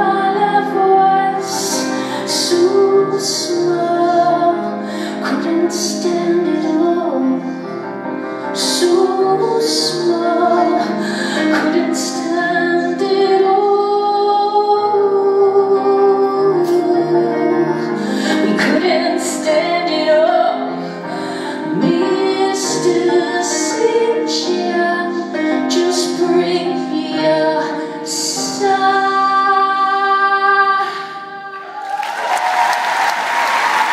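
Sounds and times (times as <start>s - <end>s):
woman singing slow song: 0.0s - 7.6s, 8.6s - 31.8s
musical accompaniment: 0.0s - 33.9s
applause: 31.6s - 33.9s.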